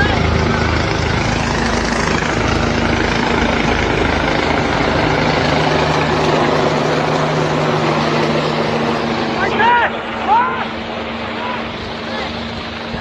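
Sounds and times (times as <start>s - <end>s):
engine running steadily: 0.0s - 13.0s
low hum shifting pitch: 0.0s - 13.0s.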